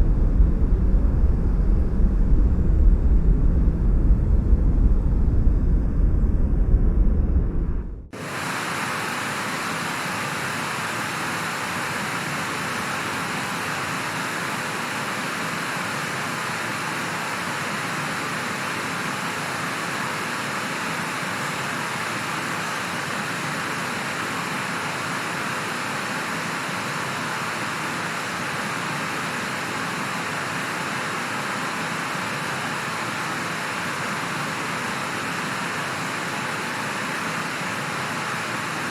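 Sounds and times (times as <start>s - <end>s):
deep loud rumble: 0.0s - 8.2s
hiss of rushing air: 0.0s - 17.8s.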